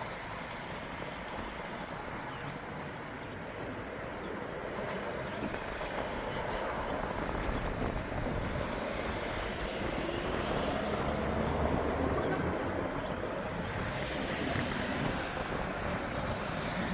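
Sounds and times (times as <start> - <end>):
passing vehicle rumble: 5.3 - 16.9.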